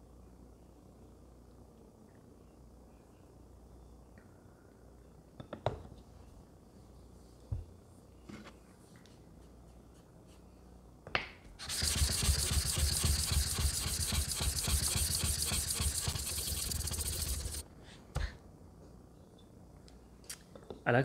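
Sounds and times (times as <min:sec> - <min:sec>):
plate rasping on sharpening stone: 0:11.6 - 0:17.6.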